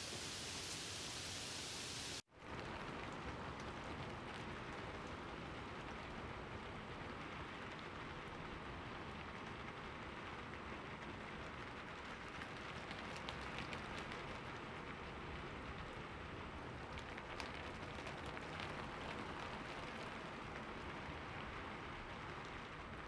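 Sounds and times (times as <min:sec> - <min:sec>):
steady rainfall: 0:00.0 - 0:23.0.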